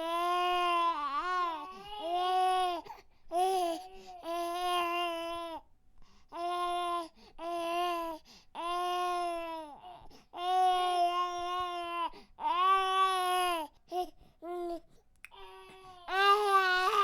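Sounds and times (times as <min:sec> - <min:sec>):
baby crying: 0:15.4 - 0:17.0.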